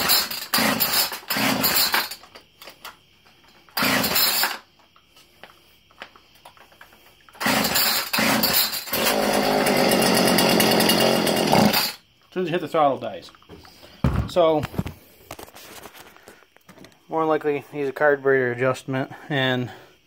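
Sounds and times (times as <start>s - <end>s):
chainsaw engine running: 0.0s - 2.1s, 3.8s - 4.6s, 7.4s - 12.0s
chainsaw pull-starting: 0.0s - 2.3s, 3.7s - 4.6s, 7.4s - 12.0s.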